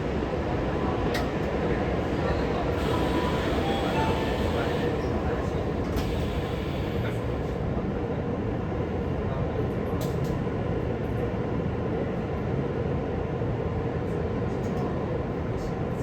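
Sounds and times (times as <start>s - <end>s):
train wheels rumbling on rail: 0.0s - 11.4s.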